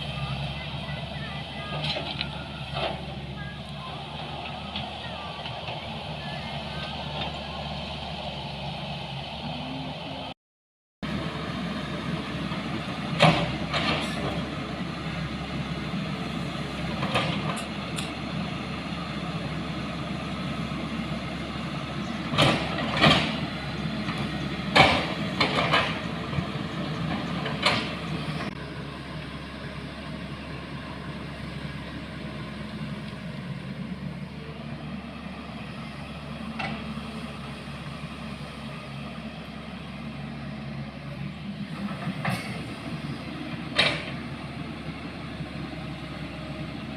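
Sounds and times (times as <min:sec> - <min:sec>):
vehicle engine running: 0:00.0 - 0:10.4.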